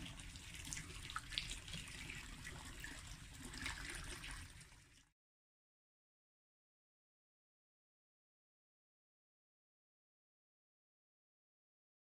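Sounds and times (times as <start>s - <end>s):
water trickling and splashing: 0.0s - 5.1s.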